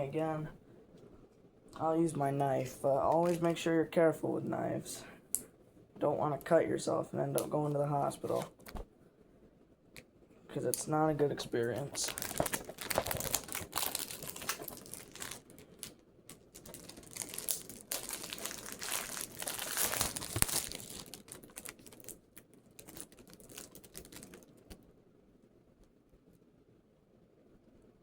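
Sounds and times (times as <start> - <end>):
plastic packaging crinkling and tearing: 3.0 - 3.6, 11.4 - 24.8.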